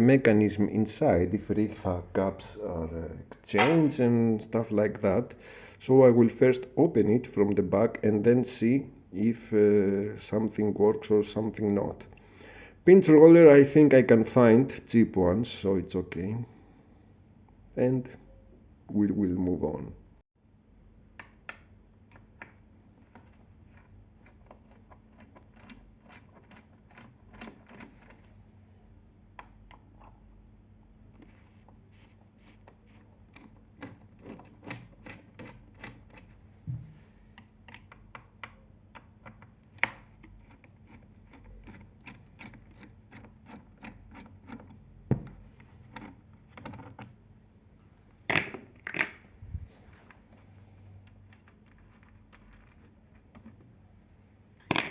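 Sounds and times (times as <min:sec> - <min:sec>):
sharp knocks: 0:03.6 - 0:04.0
small clicks and scrapes: 0:22.1 - 0:28.4, 0:31.1 - 0:36.4, 0:37.3 - 0:47.2, 0:49.9 - 0:53.7.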